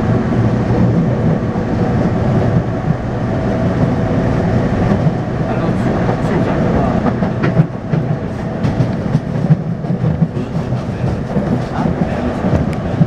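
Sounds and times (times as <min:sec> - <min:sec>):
train rumble: 0:00.0 - 0:13.0
wheel and track clacks: 0:04.9 - 0:13.0.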